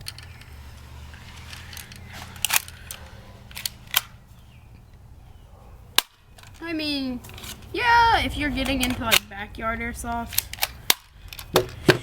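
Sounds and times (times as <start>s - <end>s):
plastic pistol clicks: 6.0s - 6.6s, 10.3s - 11.8s.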